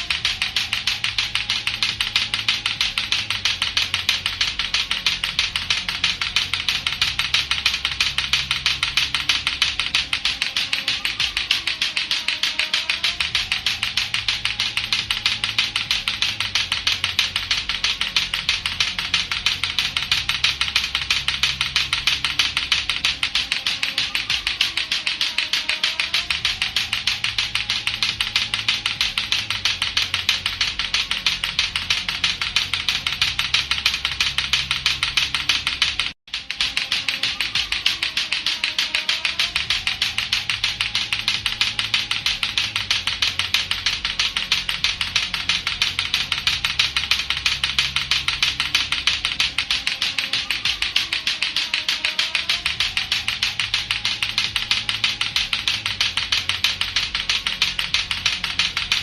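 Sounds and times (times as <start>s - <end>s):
plastic balls clacking together: 0.0s - 59.0s.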